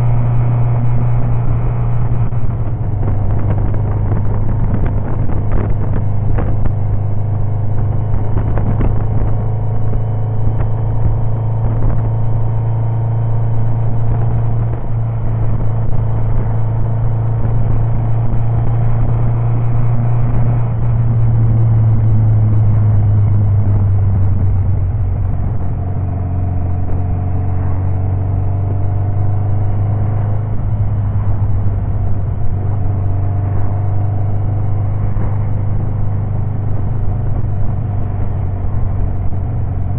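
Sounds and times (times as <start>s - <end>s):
motorcycle engine running: 0.0s - 39.9s.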